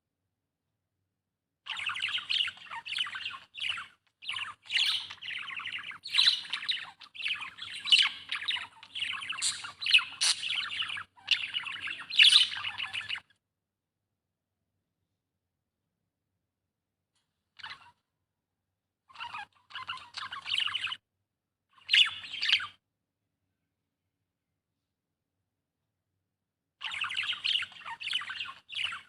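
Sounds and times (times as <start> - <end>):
budgerigar chattering and warbling: 1.7 - 13.2, 19.1 - 21.0.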